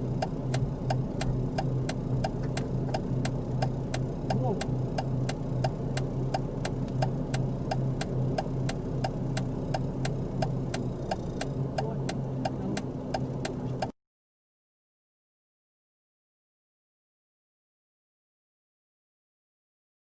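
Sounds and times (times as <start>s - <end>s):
vehicle engine idling: 0.0s - 13.9s
fast even ticking: 0.2s - 13.9s.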